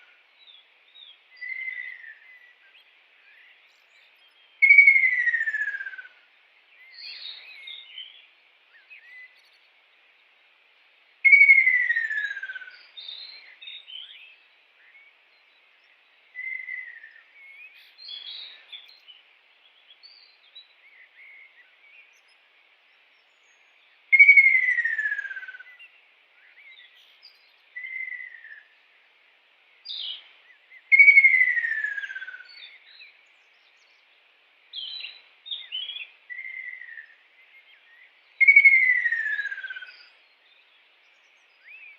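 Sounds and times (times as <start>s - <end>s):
kingfisher whistled calls: 11.3s - 12.7s, 24.1s - 25.7s, 30.9s - 32.7s, 38.4s - 40.1s.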